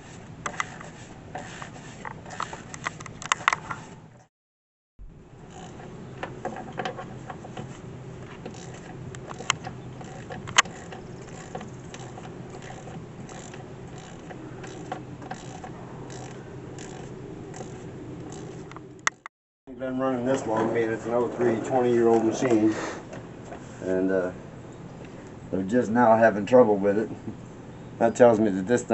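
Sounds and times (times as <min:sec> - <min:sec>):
steady low hum: 0:05.0 - 0:28.9.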